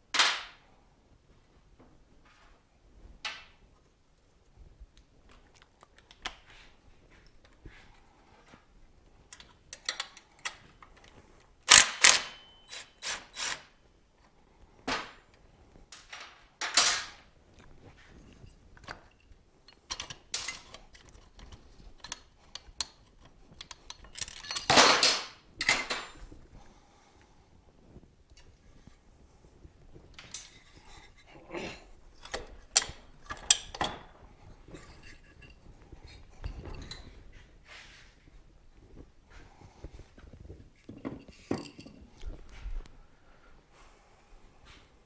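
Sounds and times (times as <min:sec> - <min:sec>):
short metallic ring: 0:12.0 - 0:13.1
metal tools clanking: 0:19.1 - 0:26.3, 0:32.1 - 0:37.5, 0:40.8 - 0:42.3.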